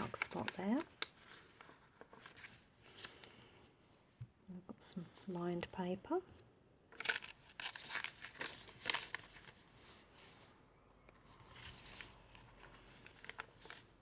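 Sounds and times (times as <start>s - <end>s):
paper pages rustling: 0.0s - 3.6s, 6.9s - 14.0s.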